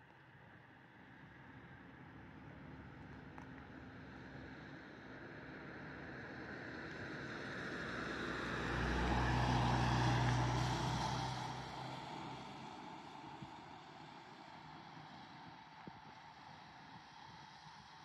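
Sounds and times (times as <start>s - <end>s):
vehicle passing by: 8.3s - 12.5s.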